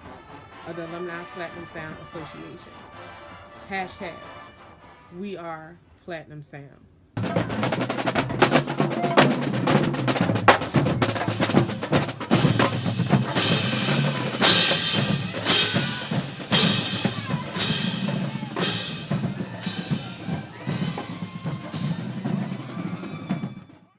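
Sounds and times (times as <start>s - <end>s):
drum-led music: 7.2s - 23.9s.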